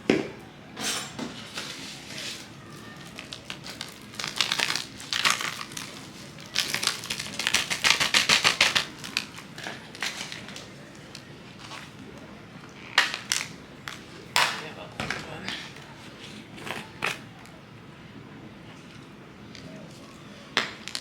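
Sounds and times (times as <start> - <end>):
crinkling and rattling: 1.3 - 12.0.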